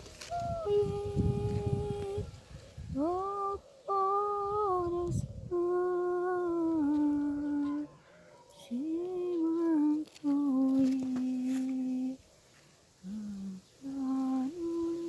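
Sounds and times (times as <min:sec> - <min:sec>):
woman humming a melody: 0:00.2 - 0:07.9, 0:08.6 - 0:12.2, 0:13.0 - 0:15.0.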